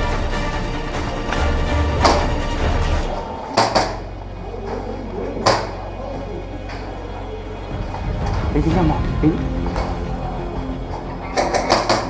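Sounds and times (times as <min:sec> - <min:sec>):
background music: 0:00.0 - 0:12.0
sharp crack: 0:07.7 - 0:12.0.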